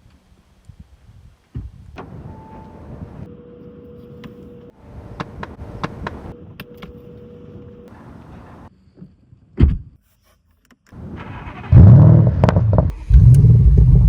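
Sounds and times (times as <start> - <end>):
car engine starting and revving: 11.0 - 14.0.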